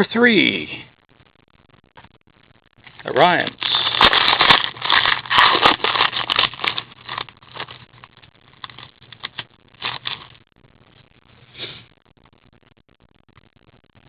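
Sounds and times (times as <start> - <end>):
cards and wrapper crinkling: 2.9 - 10.4.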